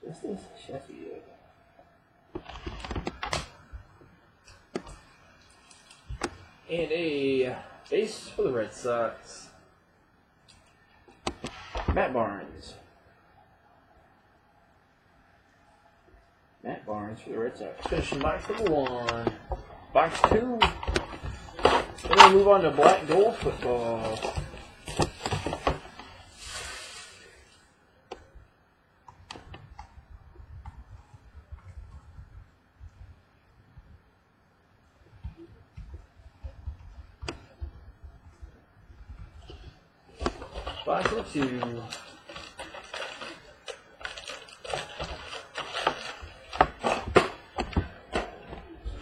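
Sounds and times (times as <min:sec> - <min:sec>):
cardboard and wrapper rustling: 0:17.8 - 0:26.8, 0:39.2 - 0:49.0
short rustling hiss: 0:26.1 - 0:27.7.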